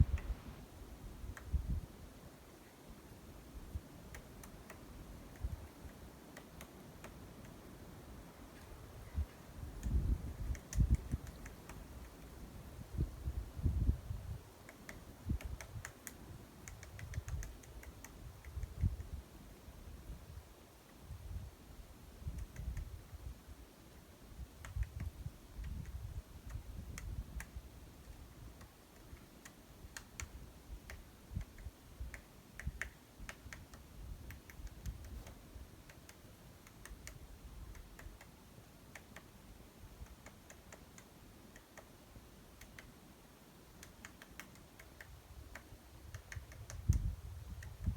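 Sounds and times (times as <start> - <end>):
woodpecker tapping: 0.0 - 0.5, 4.1 - 7.6, 8.5 - 12.6, 14.6 - 19.1, 28.6 - 39.3, 40.0 - 42.0, 43.7 - 47.9.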